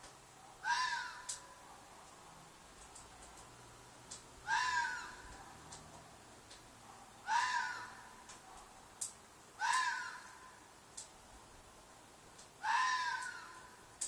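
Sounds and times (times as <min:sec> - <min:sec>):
fox screaming: 0:00.6 - 0:01.4, 0:04.4 - 0:05.3, 0:07.2 - 0:08.2, 0:09.6 - 0:10.6, 0:12.6 - 0:13.8.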